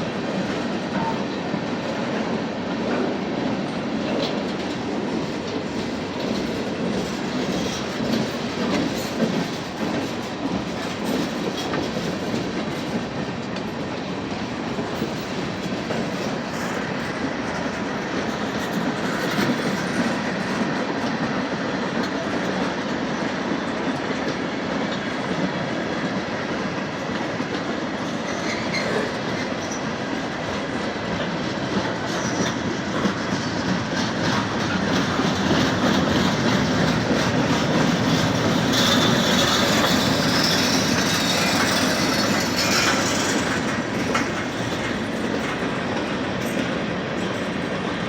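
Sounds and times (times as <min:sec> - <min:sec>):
train wheels clacking over rail joints: 0:00.0 - 0:48.0
high-pitched wheel squeal: 0:38.6 - 0:43.5.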